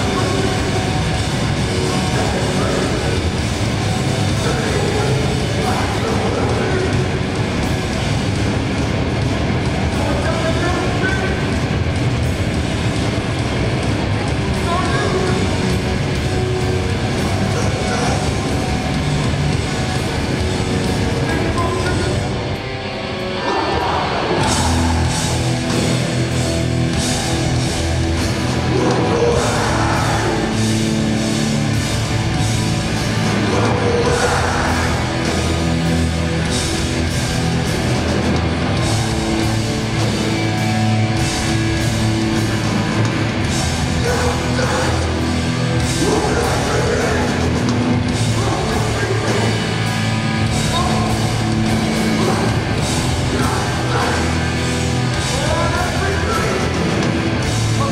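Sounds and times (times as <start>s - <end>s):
punk band playing live: 0.0s - 57.9s
shouted vocals: 23.1s - 31.8s, 32.9s - 36.5s, 38.8s - 57.9s.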